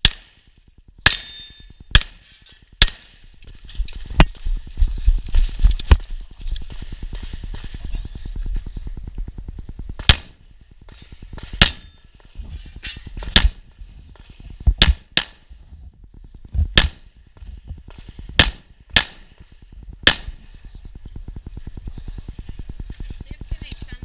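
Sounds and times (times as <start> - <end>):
pistol shots: 2.8 - 3.2, 10.0 - 10.4, 18.4 - 19.4.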